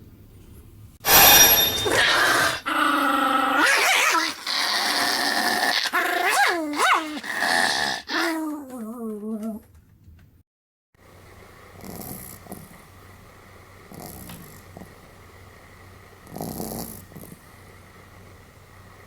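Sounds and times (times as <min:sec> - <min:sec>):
dog snoring heavily: 0:01.8 - 0:08.4, 0:11.7 - 0:12.9, 0:13.9 - 0:15.1, 0:16.2 - 0:17.8.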